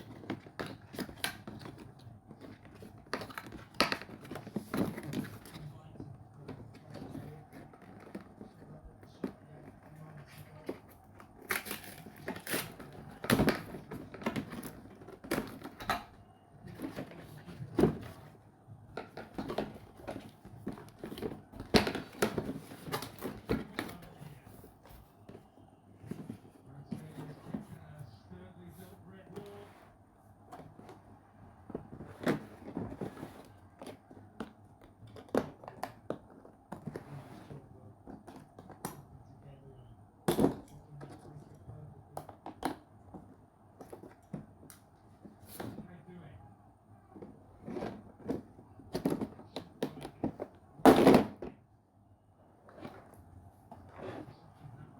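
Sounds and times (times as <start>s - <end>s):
box and packaging handling: 0.0s - 38.8s.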